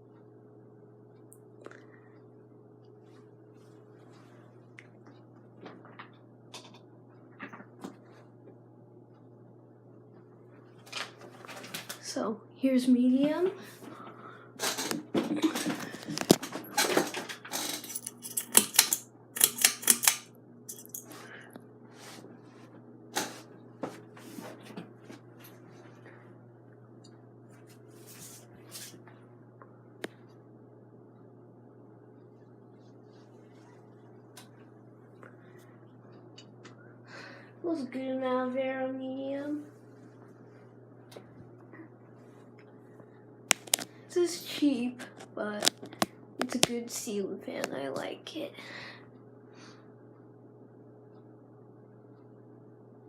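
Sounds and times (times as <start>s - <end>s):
ceiling fan motor hum: 0.0s - 53.0s
sharp clicks and rustles: 14.6s - 21.1s.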